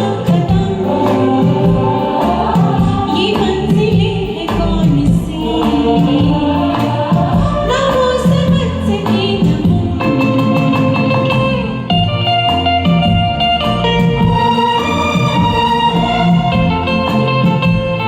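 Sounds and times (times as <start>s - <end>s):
woman singing: 0.0s - 11.8s
orchestral backing track: 0.0s - 18.0s.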